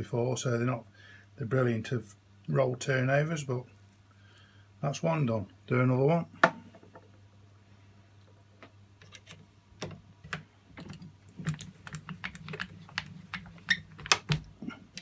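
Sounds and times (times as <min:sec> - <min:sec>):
hard parts clicking: 0:09.0 - 0:15.0.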